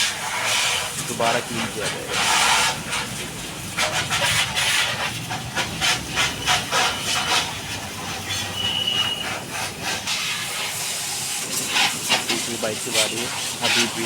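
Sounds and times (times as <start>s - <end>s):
pressure washer spraying: 0.0s - 14.0s
high squeak: 8.2s - 9.4s.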